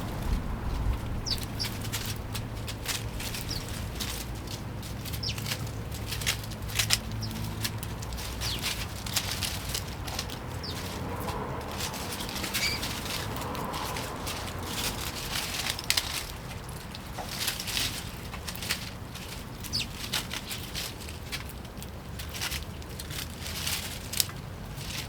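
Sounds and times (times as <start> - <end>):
steady low hum: 0.0 - 19.6
sparrows chirping: 0.0 - 25.0.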